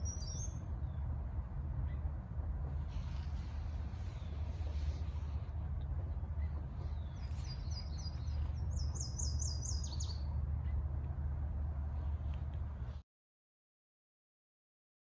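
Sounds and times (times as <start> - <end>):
songbird singing: 0.0 - 1.1, 2.7 - 11.3.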